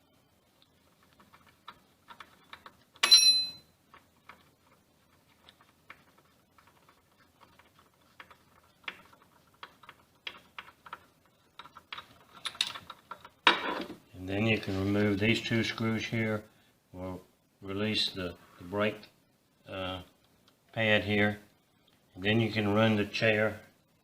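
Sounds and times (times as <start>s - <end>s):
ringing metal clank: 3.0s - 3.6s.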